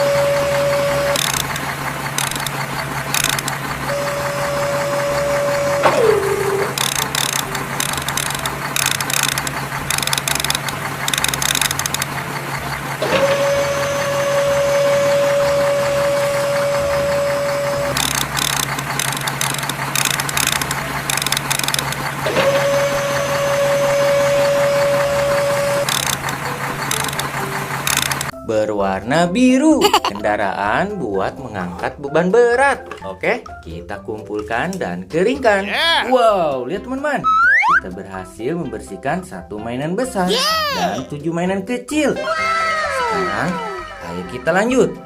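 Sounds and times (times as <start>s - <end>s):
toy motor whine: 0.0s - 28.3s, 40.3s - 41.1s
toy gears ratcheting clicks: 1.0s - 3.8s, 6.6s - 12.2s, 17.8s - 22.3s, 25.8s - 28.3s.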